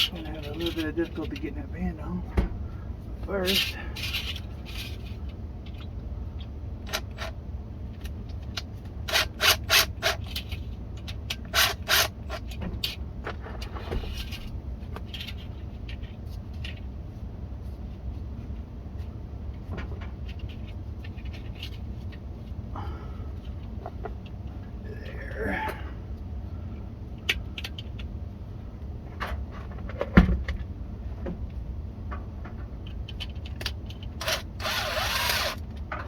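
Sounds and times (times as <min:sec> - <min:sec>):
rubbing and scraping on pipe: 0:00.0 - 0:02.0, 0:03.2 - 0:05.9, 0:09.0 - 0:16.8, 0:20.1 - 0:22.6
steady low hum: 0:00.0 - 0:36.0.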